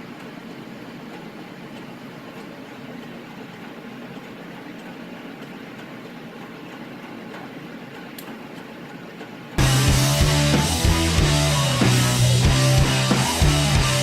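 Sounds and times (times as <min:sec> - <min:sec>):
heavy metal guitar music: 0:09.6 - 0:14.0.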